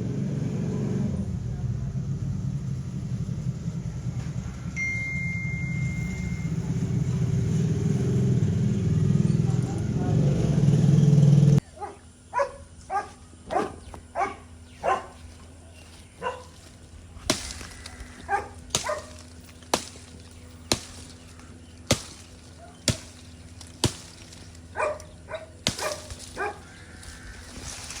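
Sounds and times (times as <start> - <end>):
sharp single knocks: 17.2 - 18.0, 18.7 - 24.5, 25.6 - 26.4.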